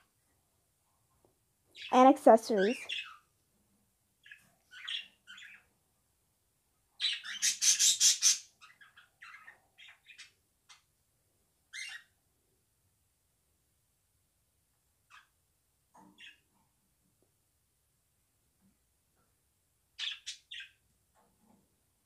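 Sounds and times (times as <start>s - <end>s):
budgies chirping and chattering: 2.5s - 3.3s, 4.2s - 5.7s, 7.0s - 10.8s, 11.7s - 12.1s, 16.0s - 16.5s, 20.0s - 20.8s.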